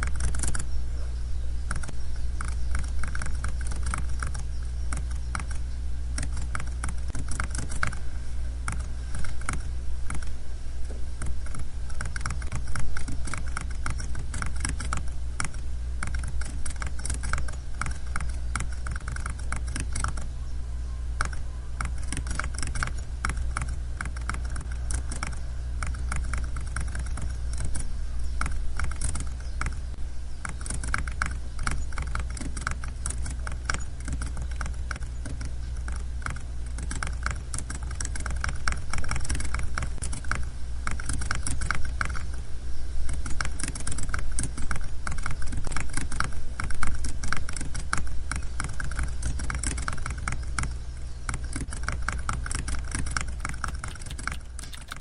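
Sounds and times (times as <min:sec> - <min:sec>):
steady low hum: 0:00.0 - 0:55.0
computer keyboard typing: 0:52.9 - 0:55.0.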